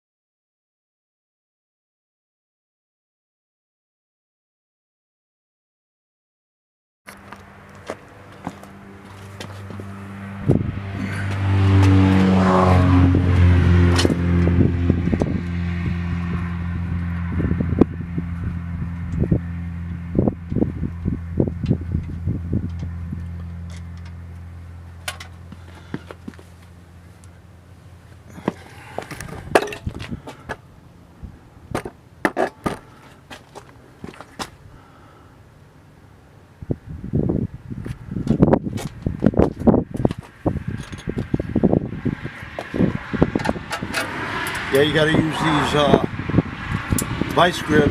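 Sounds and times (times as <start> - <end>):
hand tools clinking on metal: 28.5 - 30.0.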